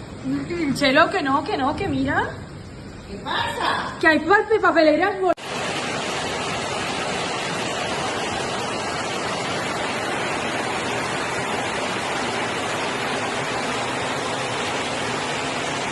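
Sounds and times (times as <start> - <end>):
floodwater rushing down street: 5.3 - 15.9.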